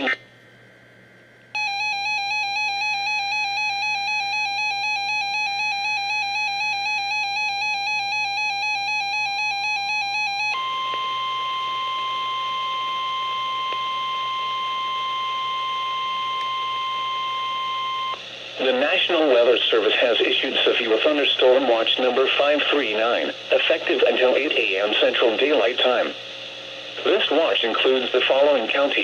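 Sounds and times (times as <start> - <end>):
fast pulsing buzzy alarm: 1.6 - 18.2
steady warning alarm tone: 1.6 - 19.0.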